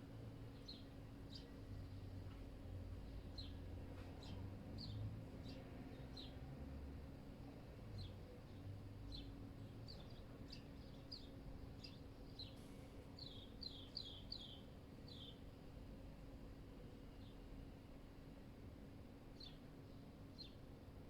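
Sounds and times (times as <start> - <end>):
small bird chirping: 13.2 - 15.4.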